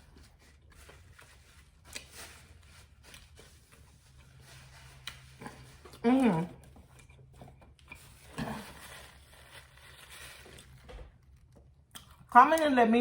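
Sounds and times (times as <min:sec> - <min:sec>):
chewing and food smacks: 0:05.0 - 0:06.0, 0:10.6 - 0:12.4.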